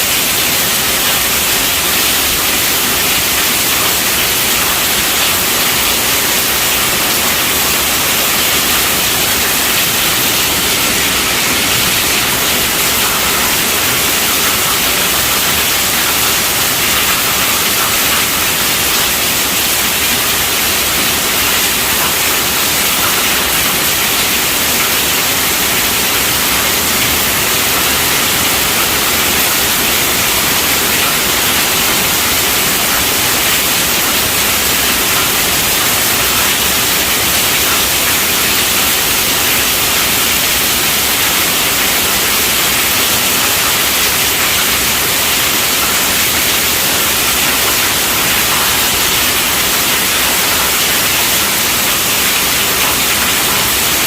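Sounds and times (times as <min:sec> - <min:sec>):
heavy rain on a tent roof: 0:00.0 - 0:54.0.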